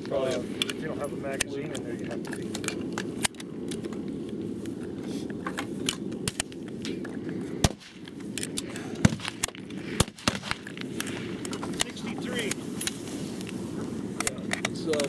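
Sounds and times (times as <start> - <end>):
metallic clicks from rifle handling: 0.6 - 4.0, 14.2 - 15.0.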